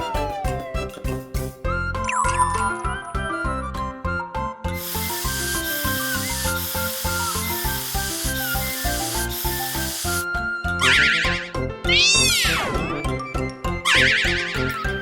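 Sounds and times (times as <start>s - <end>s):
cartoon hiss: 4.8s - 10.2s.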